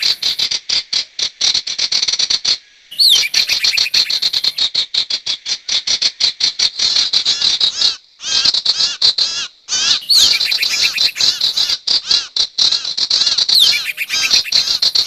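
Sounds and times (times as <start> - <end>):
bird high chattering chirps: 0.0 - 0.5, 2.9 - 4.6, 9.7 - 11.8, 13.5 - 15.0.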